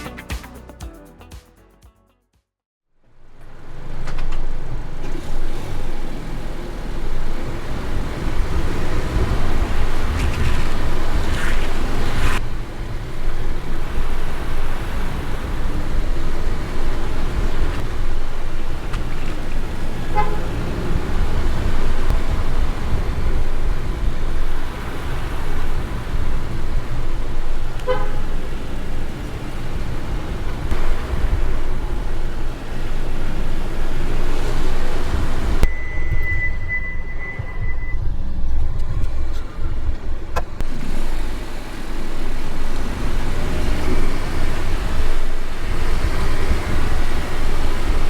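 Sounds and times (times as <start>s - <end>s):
road and tyre rumble: 3.0s - 48.0s
short beeps: 35.7s - 38.2s.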